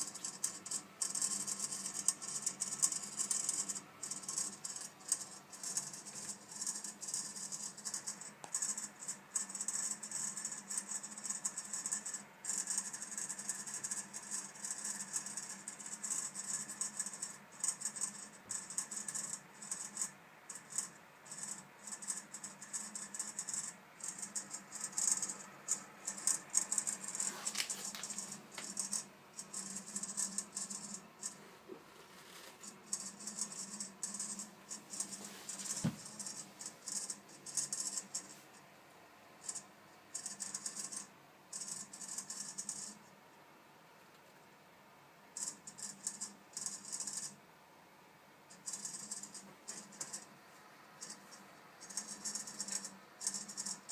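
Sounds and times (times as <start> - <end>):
boiler crackling rattle: 0.0 - 31.4
steady low hum: 0.0 - 53.9.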